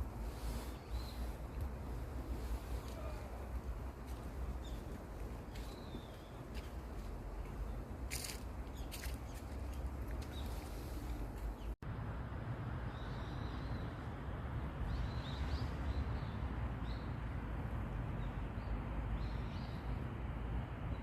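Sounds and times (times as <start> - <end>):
low rumble of city traffic: 0.0 - 21.0
small birds chirping: 0.2 - 11.8.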